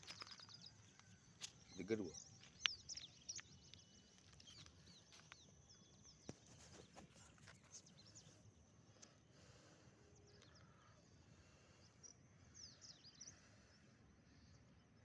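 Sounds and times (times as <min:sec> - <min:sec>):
faint high bird chirps: 0:00.0 - 0:09.1.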